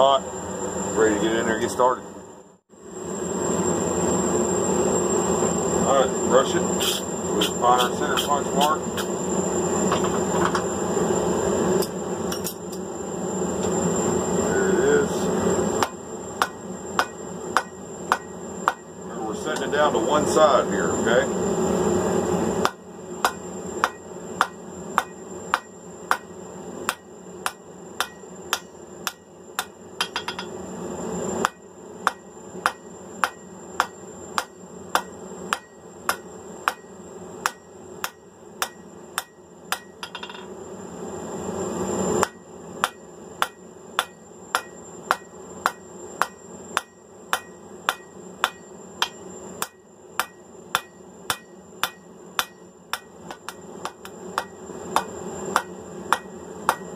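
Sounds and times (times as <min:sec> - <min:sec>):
hammer ringing on anvil: 0:15.8 - 0:18.9, 0:22.6 - 0:26.3, 0:26.9 - 0:30.5, 0:31.4 - 0:40.5, 0:42.2 - 0:56.9.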